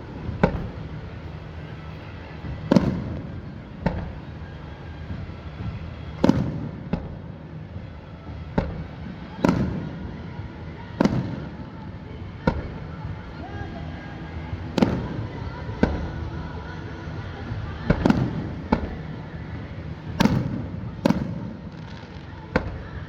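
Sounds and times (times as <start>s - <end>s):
fireworks bursting with loud bangs: 0.0s - 13.6s, 14.4s - 23.0s.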